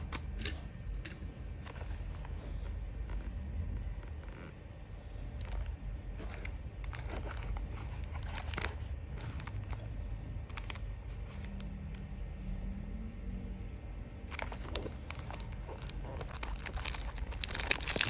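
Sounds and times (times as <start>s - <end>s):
steady low hum: 0.0s - 18.0s
packaging crinkling and tearing: 5.4s - 9.9s, 10.5s - 11.7s, 14.3s - 18.0s.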